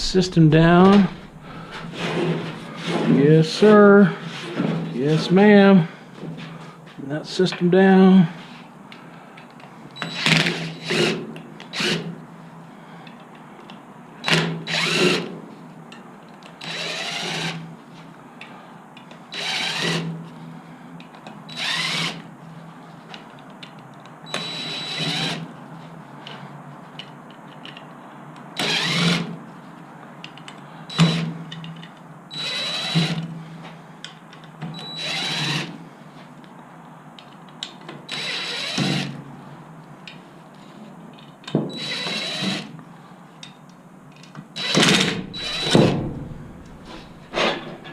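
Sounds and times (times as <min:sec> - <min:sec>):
cordless drill spinning: 0:11.7 - 0:12.0, 0:14.2 - 0:15.2, 0:16.6 - 0:17.6, 0:19.3 - 0:20.0, 0:21.5 - 0:22.2, 0:28.6 - 0:29.2, 0:32.4 - 0:33.2, 0:34.9 - 0:35.7, 0:38.1 - 0:39.1, 0:41.8 - 0:42.6, 0:44.6 - 0:45.9.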